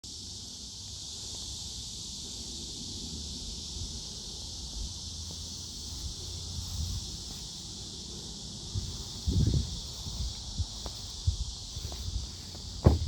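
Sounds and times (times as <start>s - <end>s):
insect chorus drone: 0.0s - 13.0s
wind rumbling on microphone: 5.6s - 7.6s, 8.6s - 13.0s.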